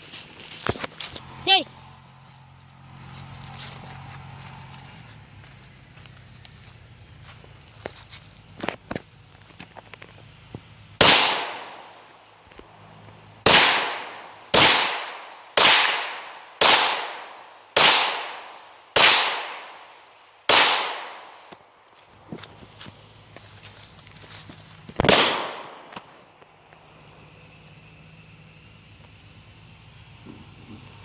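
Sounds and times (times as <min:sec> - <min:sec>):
rifle shots with echo: 0:11.0 - 0:12.1, 0:13.4 - 0:21.5, 0:25.0 - 0:26.2.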